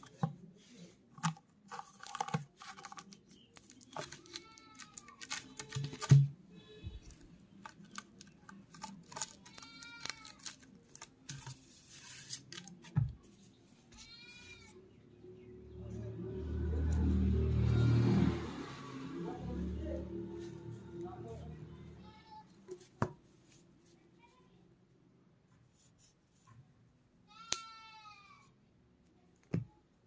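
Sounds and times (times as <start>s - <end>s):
packaging crinkling and clicking: 1.2s - 6.2s, 7.1s - 11.5s.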